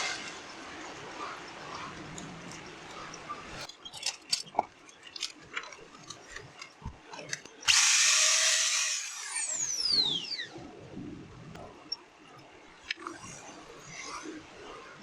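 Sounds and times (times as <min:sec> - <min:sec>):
tool handling clicks and knocks: 0:03.6 - 0:07.8
angle grinder whirring: 0:07.6 - 0:10.3.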